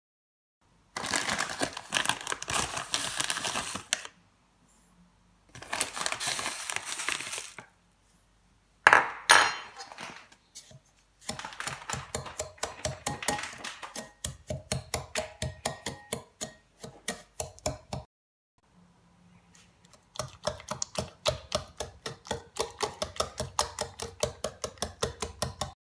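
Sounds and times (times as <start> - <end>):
rustling and crinkling: 1.0 - 4.1, 5.5 - 7.8, 9.7 - 14.0
utensil tapping against a bowl: 11.9 - 18.1, 20.2 - 25.8.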